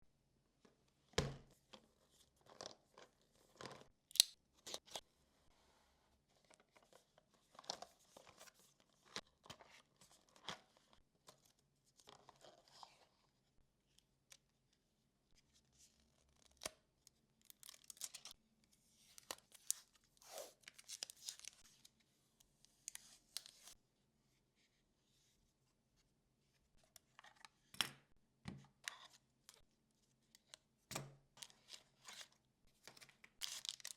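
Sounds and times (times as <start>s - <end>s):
packaging rustling and tearing: 33.4s - 33.9s.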